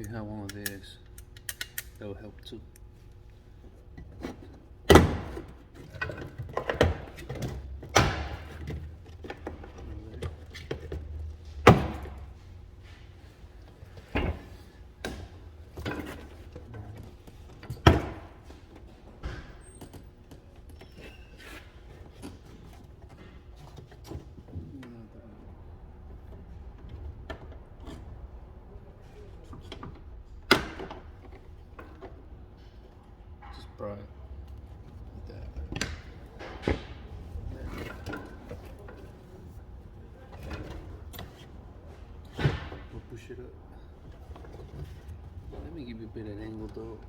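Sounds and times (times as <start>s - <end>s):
thunks and knocks in car door: 11.6s - 12.2s.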